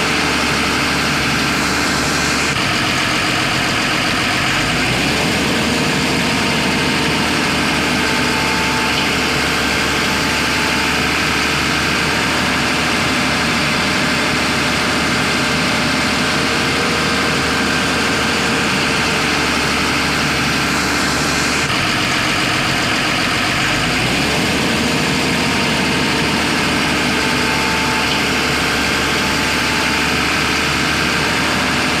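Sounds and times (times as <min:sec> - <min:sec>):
diesel engine rumbling: 0:00.0 - 0:32.0.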